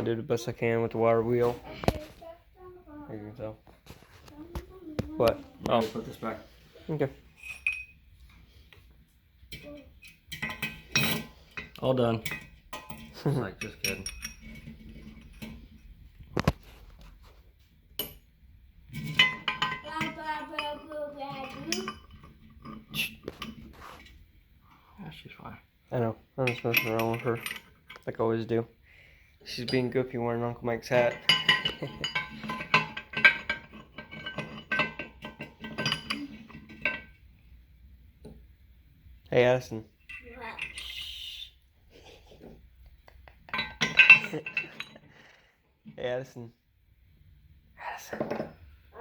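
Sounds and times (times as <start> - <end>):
loose metal parts clinking: 10.1 - 15.8, 18.9 - 20.8, 26.4 - 28.2, 30.9 - 37.2, 43.5 - 45.1.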